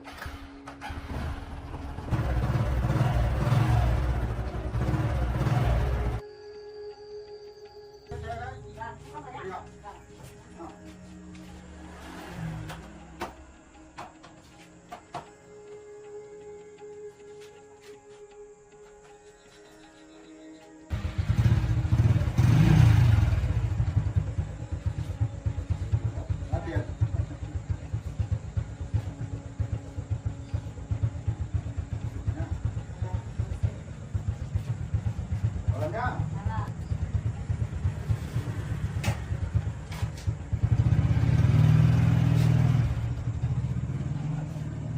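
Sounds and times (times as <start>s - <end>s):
small motorcycle engine idling: 0.0s - 6.4s, 20.9s - 44.9s
soft background music: 0.0s - 44.9s.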